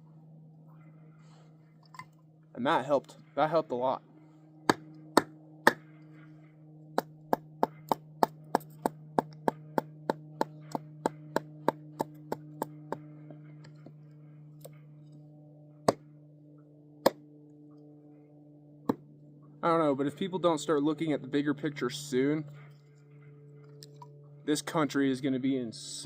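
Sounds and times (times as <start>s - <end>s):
steady low hum: 0.0s - 26.0s
hatchet chopping kindling: 4.7s - 5.9s, 7.0s - 14.0s, 15.8s - 16.0s, 17.0s - 17.2s.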